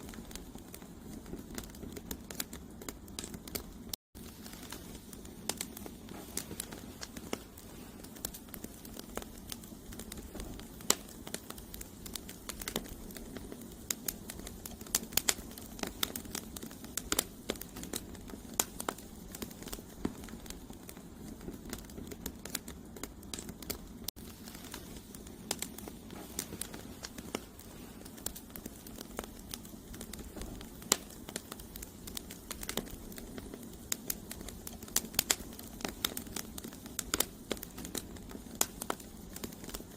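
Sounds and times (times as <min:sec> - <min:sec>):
campfire crackling and popping: 0:00.0 - 0:39.9
low rush of flame: 0:00.0 - 0:39.9.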